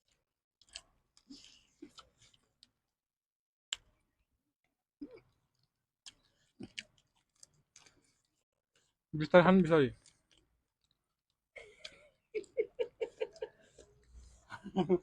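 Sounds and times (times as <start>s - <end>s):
people chewing: 0.0s - 2.8s, 5.0s - 15.0s.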